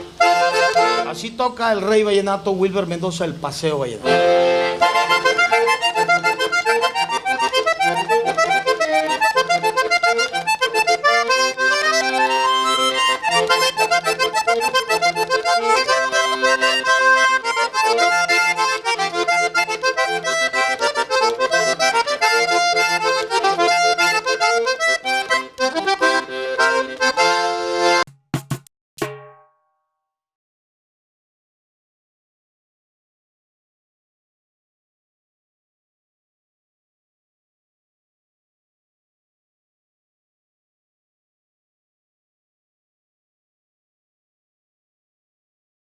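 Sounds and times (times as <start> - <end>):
button accordion playing: 0.0 - 1.4, 4.0 - 28.7.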